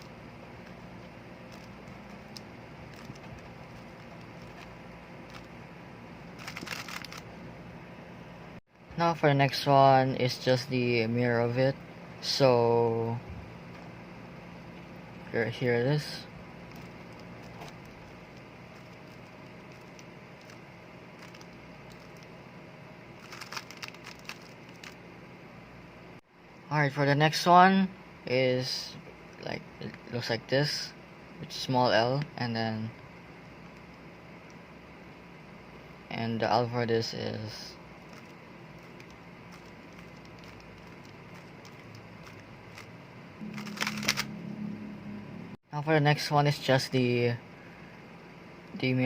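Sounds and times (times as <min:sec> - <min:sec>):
low hum: 0:00.0 - 0:26.7, 0:27.9 - 0:45.6
puzzle cube plastic clicks: 0:06.4 - 0:07.2, 0:21.2 - 0:22.3, 0:23.2 - 0:25.0, 0:38.1 - 0:42.9, 0:43.6 - 0:44.3.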